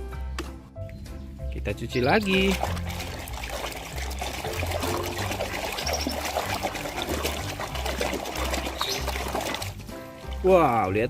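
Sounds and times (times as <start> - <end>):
water pouring and trickling: 1.8 - 11.0
hand scrubbing plastic toy: 2.1 - 10.0.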